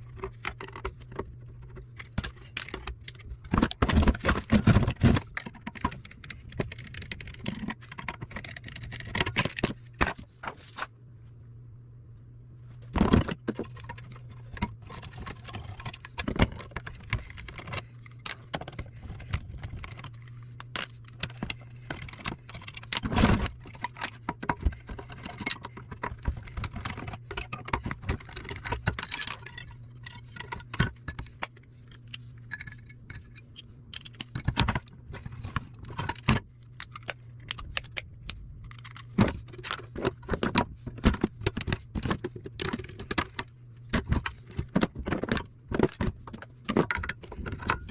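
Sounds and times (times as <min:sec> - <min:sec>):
steady low hum: 0:00.0 - 0:47.9
metal parts clinking and rattling: 0:10.0 - 0:10.9.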